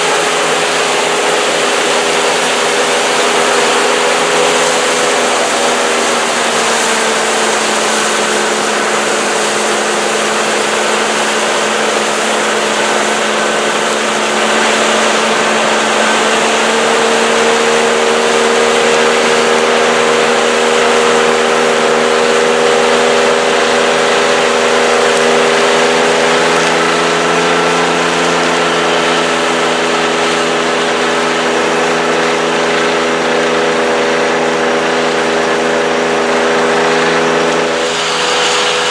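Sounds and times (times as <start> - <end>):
combine harvester whirring: 0.0 - 38.9
engine hum: 0.0 - 38.9.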